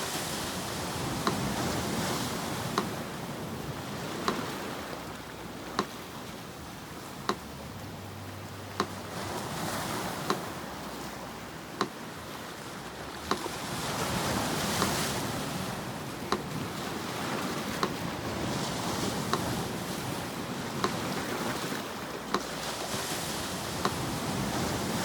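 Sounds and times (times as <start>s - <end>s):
sea surf washing ashore: 0.0s - 25.0s
metronome ticking: 1.0s - 3.1s, 4.1s - 16.7s, 17.7s - 18.1s, 19.0s - 21.3s, 22.1s - 22.7s, 23.8s - 24.1s.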